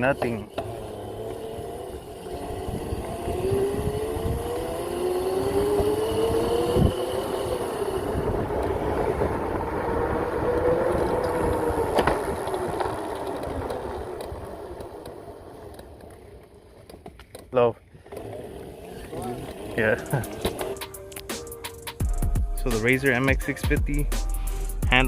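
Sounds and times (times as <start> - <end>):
electric motorbike motor whine: 0.0 - 16.8, 17.9 - 21.1
rough rumble: 0.0 - 17.2.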